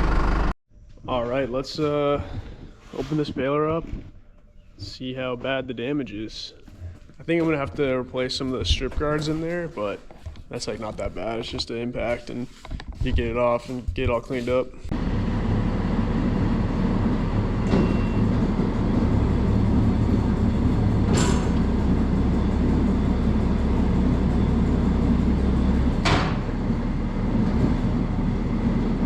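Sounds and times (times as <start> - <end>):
diesel tractor engine idling: 0.0 - 0.6, 14.9 - 29.0.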